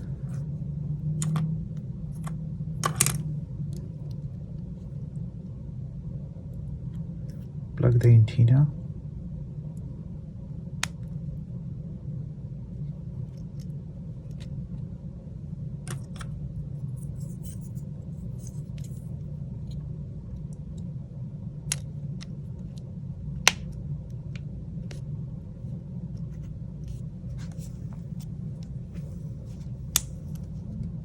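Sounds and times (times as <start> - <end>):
low hum: 0.0 - 31.0
tools clicking on smartphone parts: 1.2 - 1.5.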